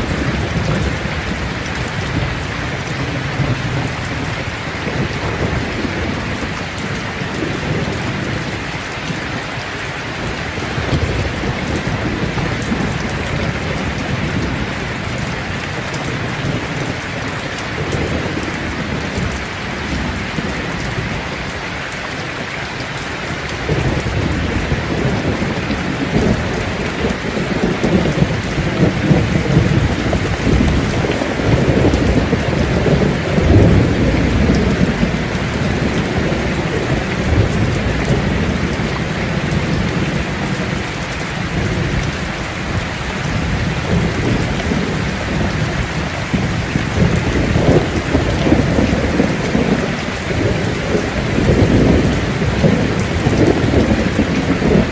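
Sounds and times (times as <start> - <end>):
rolling thunder: 0.0 - 8.6, 23.5 - 54.9
steady rain: 0.0 - 54.9.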